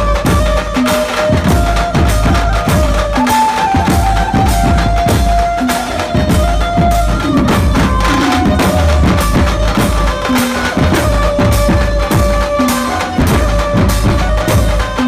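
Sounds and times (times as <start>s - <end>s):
band music with fast drums: 0.0s - 15.0s.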